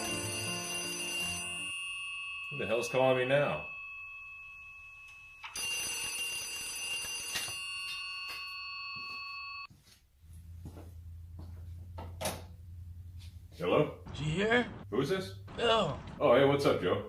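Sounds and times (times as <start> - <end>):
phone ringing bell-like ringtone: 0.0 - 9.7
low steady hum: 10.3 - 16.5.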